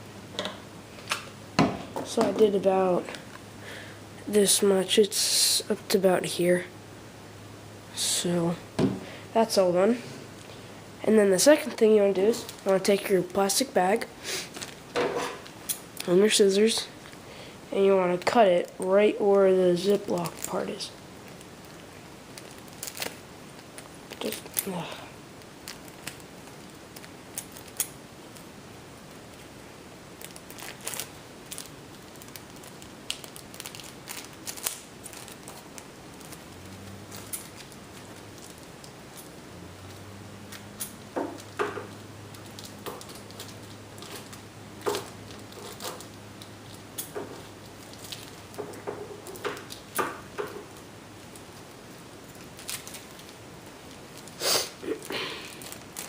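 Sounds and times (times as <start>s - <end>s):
steady low hum: 0.0s - 56.0s
plastic crackling: 11.3s - 13.6s, 14.4s - 16.4s, 18.0s - 56.0s.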